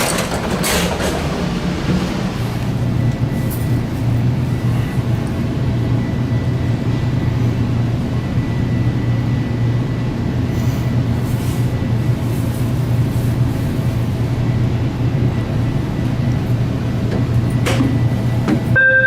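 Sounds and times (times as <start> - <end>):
train car rumble: 0.0 - 19.0.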